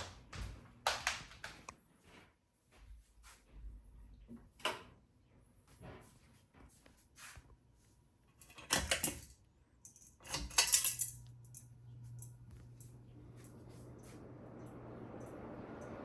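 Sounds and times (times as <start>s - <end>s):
metallic clinking and rattling: 8.4s - 12.9s
ceiling fan motor hum: 10.2s - 16.0s.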